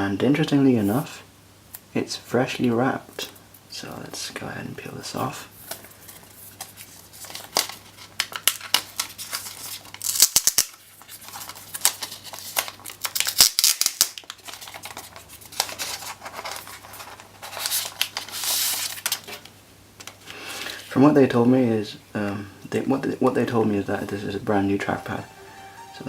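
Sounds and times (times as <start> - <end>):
plastic wrap crackling: 5.6 - 20.8.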